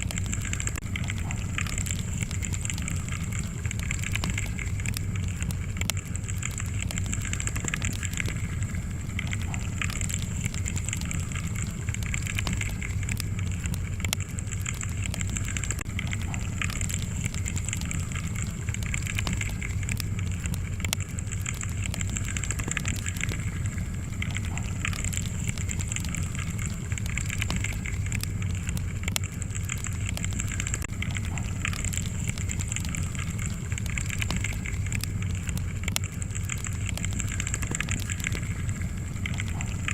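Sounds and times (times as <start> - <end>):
flames rumbling in fireplace: 0.0 - 39.9
logs crackling and popping: 0.0 - 39.9.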